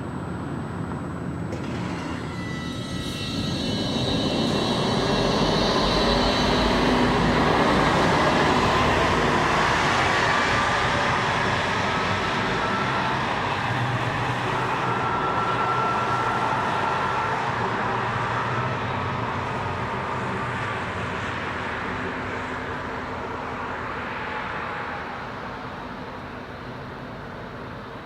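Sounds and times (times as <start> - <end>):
high steady tone: 0.1 - 19.0
tram running on rails: 1.2 - 28.0.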